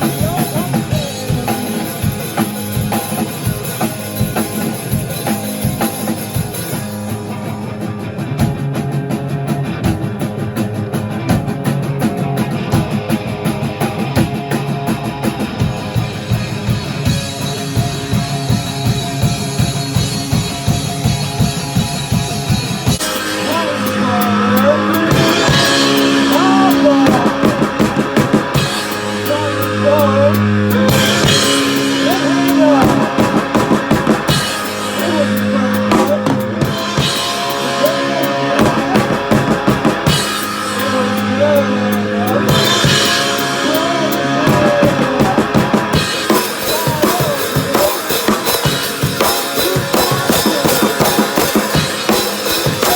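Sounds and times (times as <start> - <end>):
drum kit steady beat: 0.0 - 52.9
rock music: 0.0 - 52.9.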